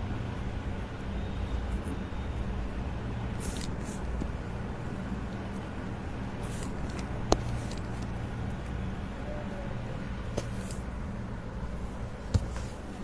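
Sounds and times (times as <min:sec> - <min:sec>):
hands and cloth rustling: 0:10.3 - 0:10.9, 0:11.9 - 0:13.0.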